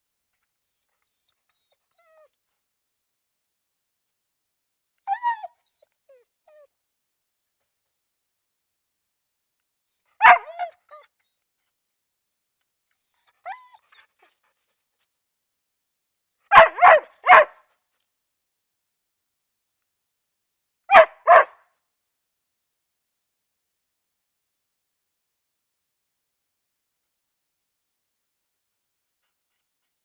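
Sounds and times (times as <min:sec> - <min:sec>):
dog barking: 0:10.2 - 0:10.7, 0:16.5 - 0:17.6, 0:20.9 - 0:21.6.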